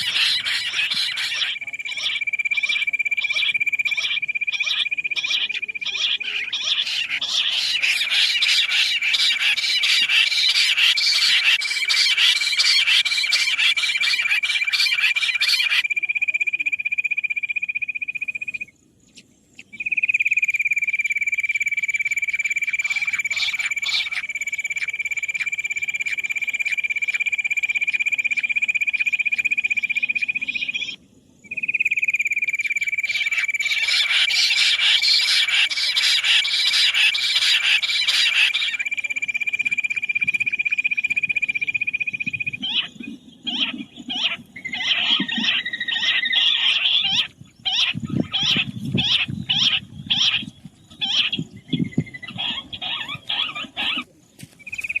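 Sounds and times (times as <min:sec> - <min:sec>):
quail shrill trill: 0:00.0 - 0:16.0, 0:22.6 - 0:26.2, 0:32.6 - 0:54.1.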